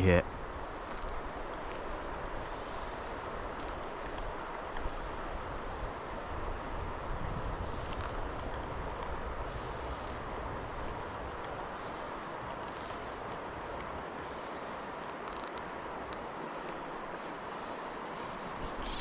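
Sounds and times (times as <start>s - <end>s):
river water flowing: 0.0s - 19.0s
bird chirps: 18.8s - 19.0s.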